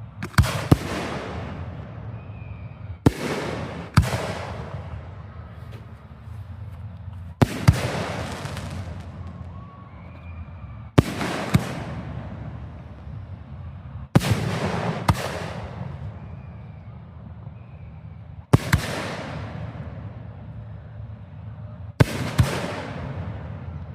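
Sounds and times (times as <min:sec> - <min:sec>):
fireworks bursting with bangs: 0:00.2 - 0:06.7, 0:07.3 - 0:09.8, 0:11.0 - 0:13.2, 0:14.2 - 0:16.5, 0:18.5 - 0:20.3, 0:22.0 - 0:23.8.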